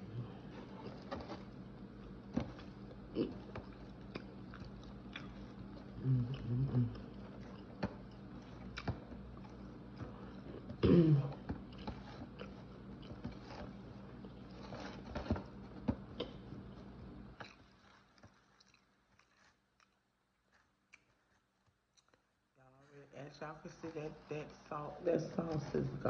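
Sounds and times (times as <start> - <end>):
person chewing food: 0.0 - 22.4
food crunching: 0.2 - 10.8, 11.4 - 22.3.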